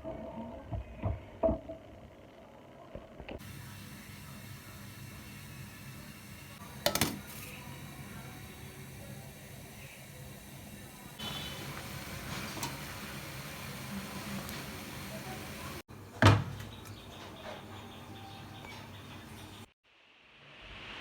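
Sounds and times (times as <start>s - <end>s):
steady hiss: 3.4s - 15.9s
kitchenware clinking: 6.7s - 7.6s.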